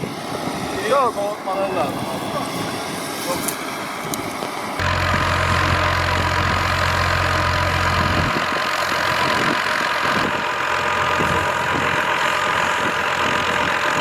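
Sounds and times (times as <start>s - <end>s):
engine running: 2.6s - 14.0s
low hum: 4.8s - 13.2s.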